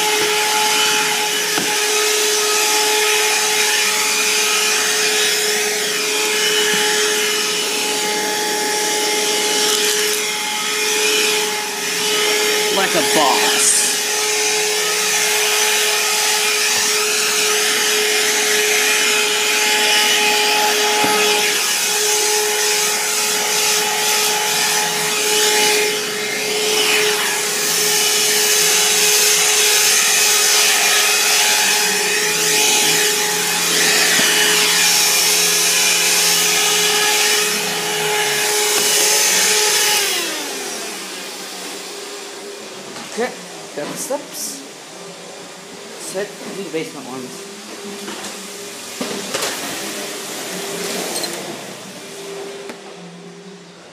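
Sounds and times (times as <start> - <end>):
handheld vacuum motor whine: 0.0 - 46.8, 47.4 - 53.9
brush scrubbing stairs: 28.4 - 39.8.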